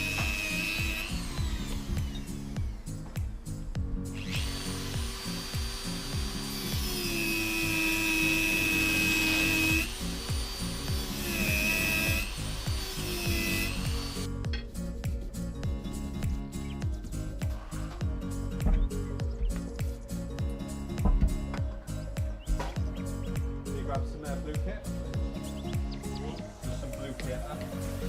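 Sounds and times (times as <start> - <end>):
power tool whining: 0.0 - 14.4
background music with beat: 0.0 - 28.0.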